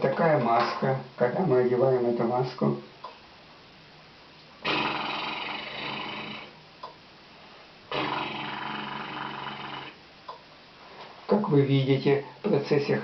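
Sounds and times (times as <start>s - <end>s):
loud rasping snores: 4.6s - 6.6s, 7.9s - 10.0s.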